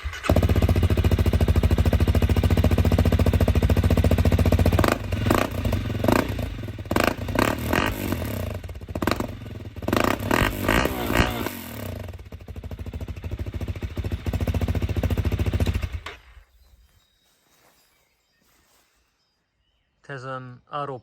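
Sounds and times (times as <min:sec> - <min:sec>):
motorcycle engine idling and revving: 0:00.0 - 0:16.8.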